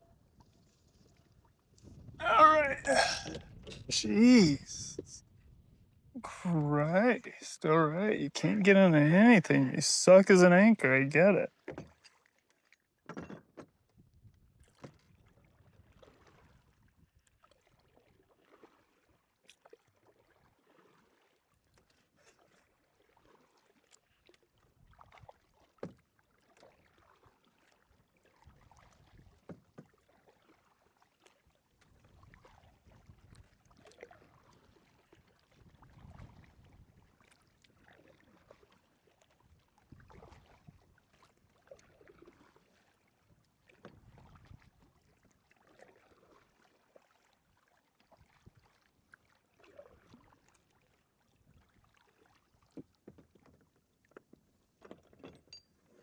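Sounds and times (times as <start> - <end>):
soft water sounds: 18.4 - 25.2, 29.7 - 55.3.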